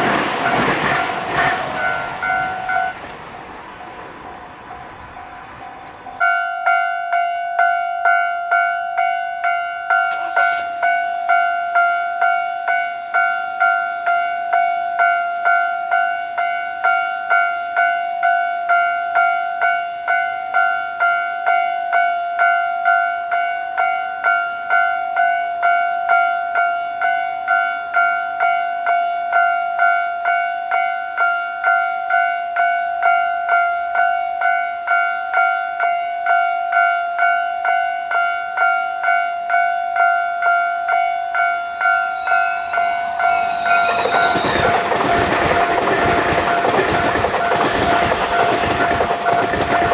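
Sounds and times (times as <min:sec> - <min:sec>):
level crossing alarm ringing: 0:00.0 - 0:06.8, 0:35.0 - 0:49.9.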